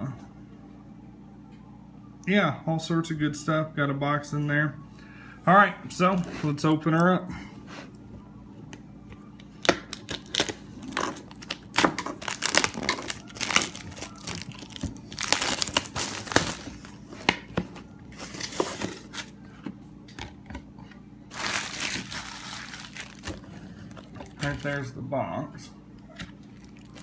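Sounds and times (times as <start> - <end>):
plastic wrap crinkling: 9.6 - 19.4, 21.3 - 24.9, 26.2 - 27.0.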